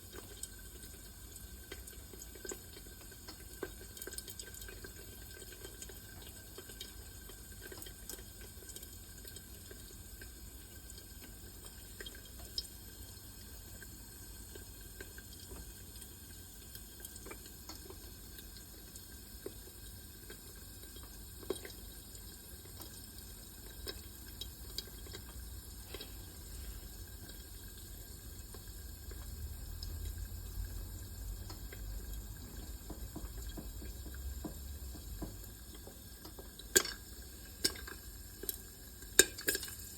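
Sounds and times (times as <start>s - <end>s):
popcorn kernels popping: 31.4s - 39.9s.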